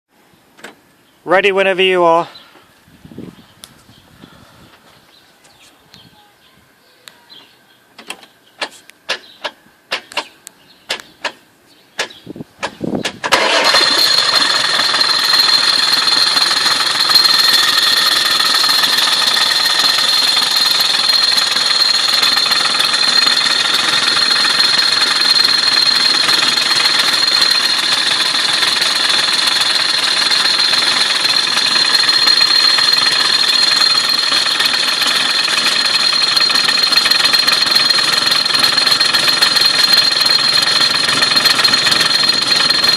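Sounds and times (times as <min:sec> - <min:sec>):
diesel engine running: 0:13.3 - 0:42.9.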